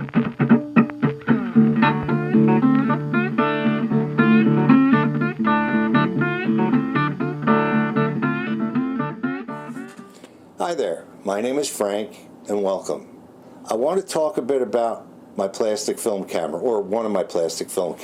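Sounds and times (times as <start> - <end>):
held bass notes: 0.0 - 10.0
acoustic guitar melody: 0.0 - 10.3.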